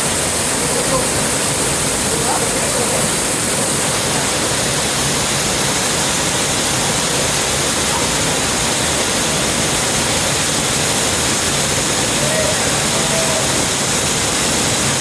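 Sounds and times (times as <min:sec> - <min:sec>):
waterfall and creek rushing: 0:00.0 - 0:15.0.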